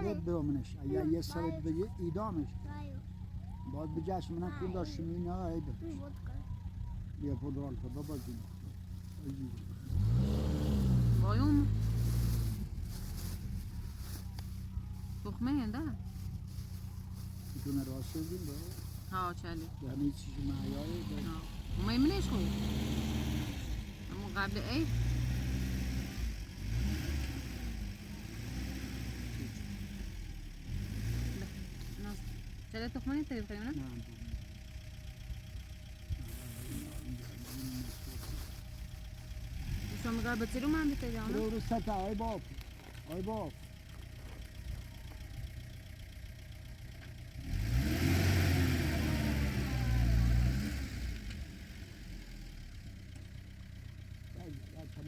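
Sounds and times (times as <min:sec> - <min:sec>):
faint voices: 0:00.0 - 0:10.0, 0:13.4 - 0:22.7, 0:36.1 - 0:41.5
vehicle engine running: 0:00.0 - 0:55.0.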